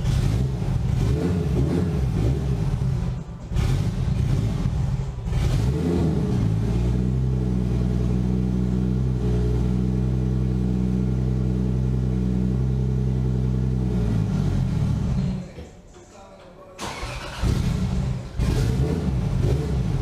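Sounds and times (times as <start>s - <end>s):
car engine revving and idling: 0.0s - 15.6s, 16.8s - 20.0s.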